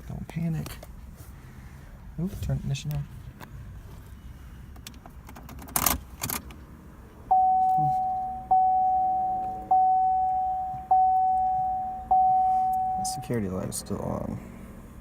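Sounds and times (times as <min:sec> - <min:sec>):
dashboard warning chime: 0:07.3 - 0:14.0.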